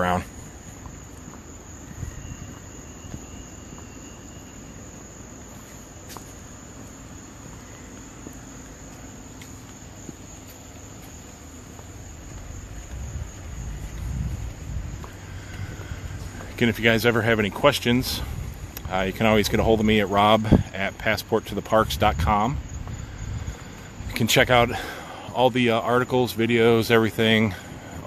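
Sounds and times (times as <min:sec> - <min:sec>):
insects chirring: 0:00.0 - 0:28.0.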